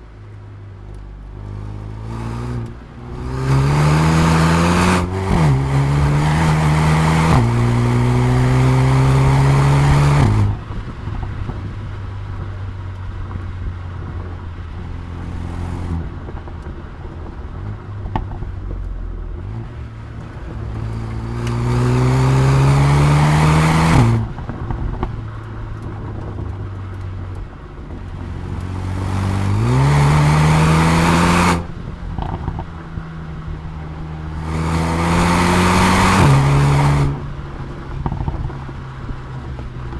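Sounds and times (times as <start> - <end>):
exhaust pops and crackles: 0.0 - 39.9
car engine revving hard: 1.4 - 11.2, 14.8 - 16.1, 19.4 - 25.0, 28.1 - 33.0, 33.6 - 38.6.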